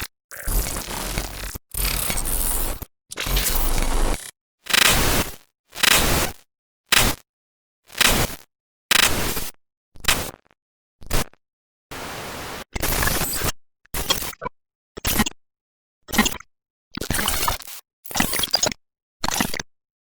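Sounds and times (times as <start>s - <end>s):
flat static: 0.0s - 5.1s
digital glitch bursts: 0.3s - 5.1s.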